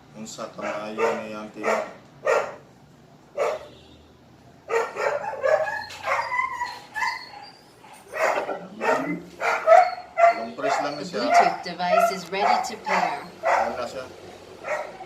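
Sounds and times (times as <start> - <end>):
dog barking: 0.6 - 2.7, 3.3 - 3.8, 4.7 - 14.0, 14.6 - 15.0
dog's wavering high calls: 4.7 - 13.8.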